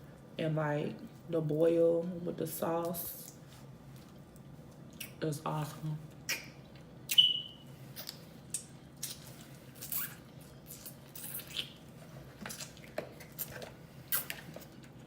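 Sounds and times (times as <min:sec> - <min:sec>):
wet lip smacks and chewing: 0:04.8 - 0:05.2, 0:08.0 - 0:11.8.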